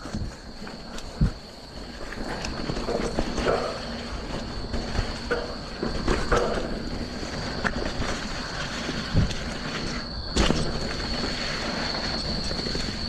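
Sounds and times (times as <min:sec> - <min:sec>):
bike knocking over bumps: 0:00.0 - 0:13.0
bike tyres rolling on dirt: 0:00.0 - 0:13.0
steady high whine: 0:00.0 - 0:13.0.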